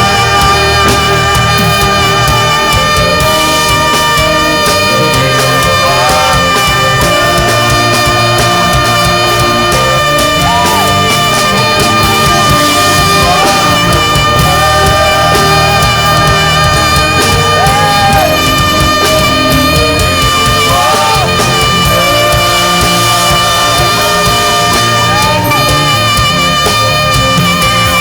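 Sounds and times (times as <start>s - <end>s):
live band playing gospel music: 0.0s - 28.0s
saxophone melody: 0.0s - 28.0s.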